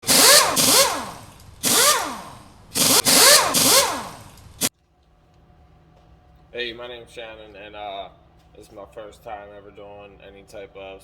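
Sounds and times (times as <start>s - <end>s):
engine revving: 0.0s - 4.7s.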